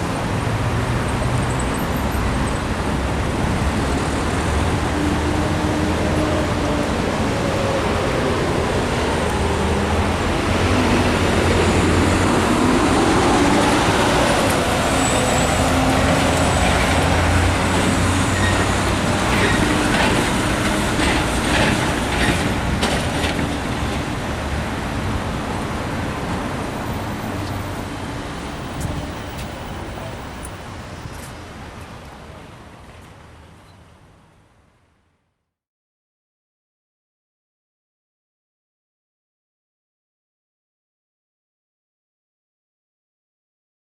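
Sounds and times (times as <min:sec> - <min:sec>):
passing vehicles: 0:00.0 - 0:34.7.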